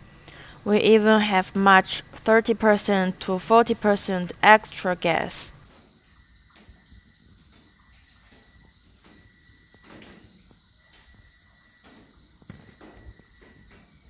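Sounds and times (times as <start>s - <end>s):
insects chirring: 0.0s - 5.7s.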